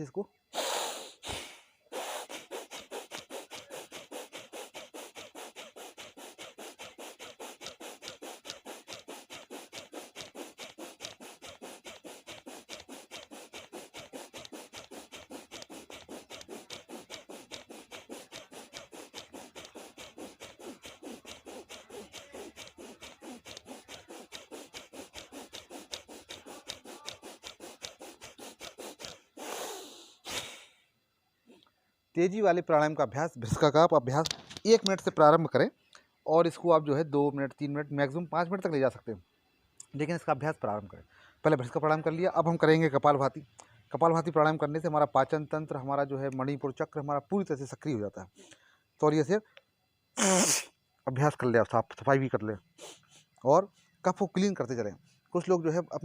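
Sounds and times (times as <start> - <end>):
man breathing forcefully through nose: 0.5 - 30.8, 41.0 - 41.4, 48.3 - 49.0, 52.7 - 54.0.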